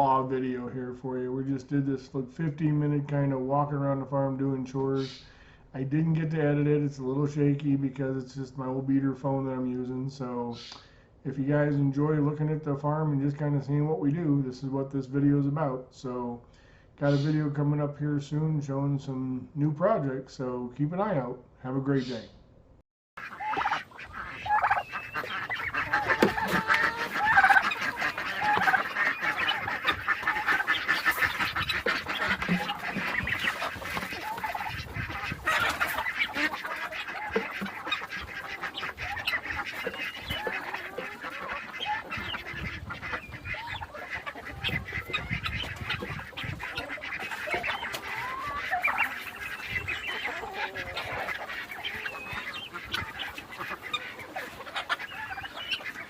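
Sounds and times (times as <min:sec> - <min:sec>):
poultry honking and clucking: 0:23.2 - 0:56.0.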